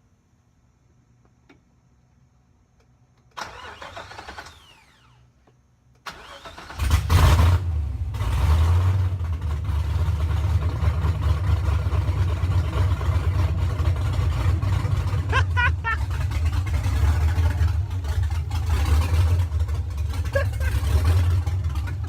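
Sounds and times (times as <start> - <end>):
starter motor cranking: 3.4 - 5.2
loud rough engine idle: 8.2 - 22.0.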